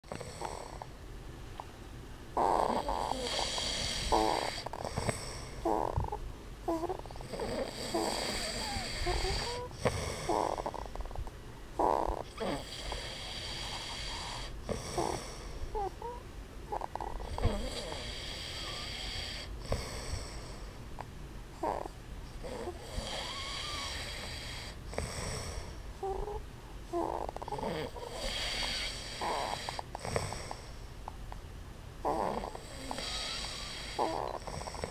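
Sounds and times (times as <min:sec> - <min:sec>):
man and baby snoring: 0:00.0 - 0:00.9, 0:02.4 - 0:11.2, 0:11.8 - 0:20.6, 0:21.6 - 0:30.7, 0:32.0 - 0:34.9
short snorts and squeaks: 0:02.4 - 0:11.1, 0:11.8 - 0:15.2, 0:16.7 - 0:19.4, 0:27.0 - 0:30.4, 0:32.0 - 0:34.9.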